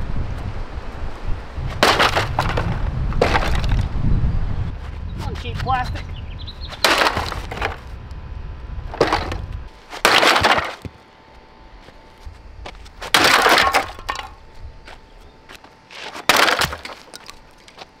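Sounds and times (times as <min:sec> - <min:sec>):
low rumble: 0:00.0 - 0:09.8.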